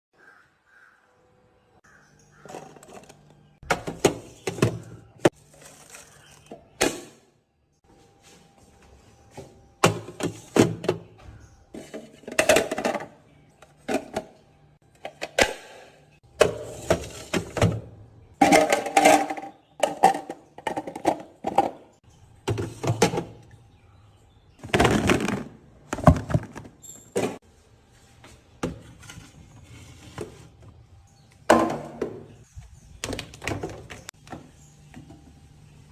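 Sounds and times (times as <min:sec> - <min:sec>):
containers knocking and clunking: 0:02.4 - 0:05.4, 0:09.3 - 0:23.6, 0:24.6 - 0:27.4, 0:31.4 - 0:35.3.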